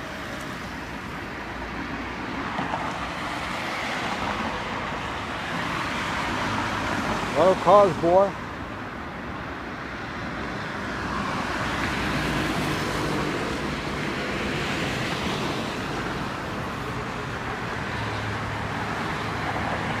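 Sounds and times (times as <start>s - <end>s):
road traffic passing: 0.0s - 20.0s.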